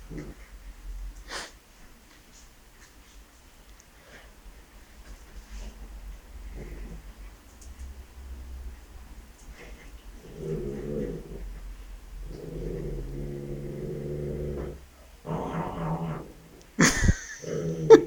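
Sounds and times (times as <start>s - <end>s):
dog growling: 0.0s - 0.5s, 6.4s - 7.2s, 9.5s - 18.0s.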